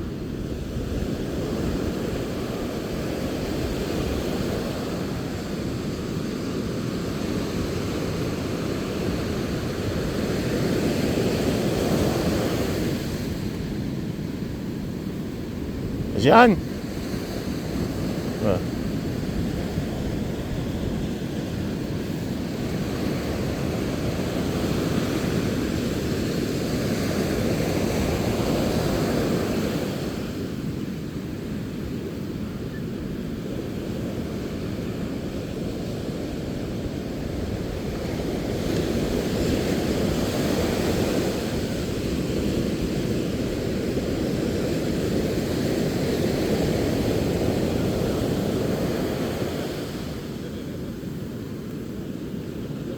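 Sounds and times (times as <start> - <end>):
sea surf breaking: 16.2 - 16.6.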